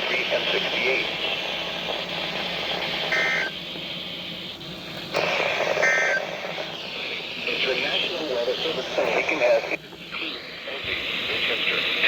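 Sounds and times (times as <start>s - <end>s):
broadcast hiss: 0.0s - 12.0s
buzzy digital data tones: 3.1s - 3.6s, 5.8s - 6.9s.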